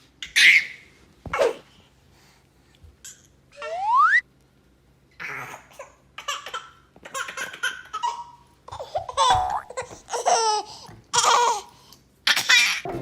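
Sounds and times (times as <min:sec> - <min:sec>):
baby laughing and squealing: 0:00.2 - 0:01.6, 0:05.2 - 0:11.7.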